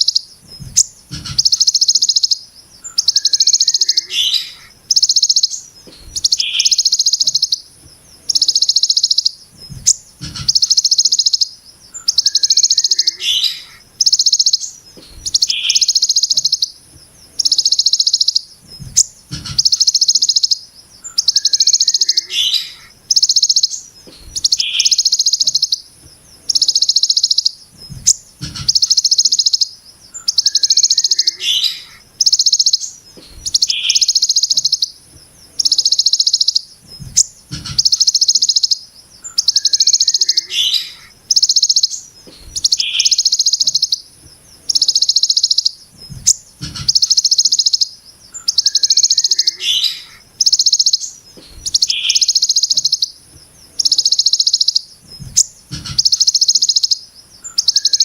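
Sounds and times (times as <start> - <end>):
bird buzzy trills: 0.0 - 58.0
soft low thumps: 0.4 - 1.6, 9.4 - 10.7, 18.6 - 19.8, 27.7 - 28.9, 36.8 - 37.9, 45.9 - 47.0, 55.0 - 56.1.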